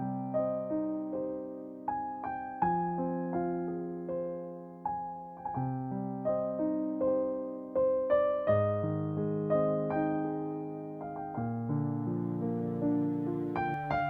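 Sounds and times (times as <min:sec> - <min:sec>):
soft slow piano melody: 0:00.0 - 0:14.0.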